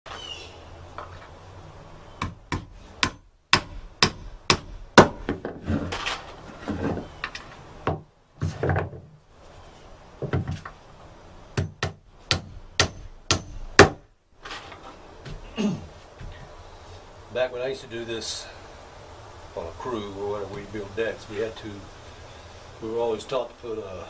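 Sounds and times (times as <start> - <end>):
hammer striking nails into wood: 2.2 - 5.5, 11.6 - 14.0
scraping and handling sounds: 5.3 - 7.7, 14.4 - 17.0.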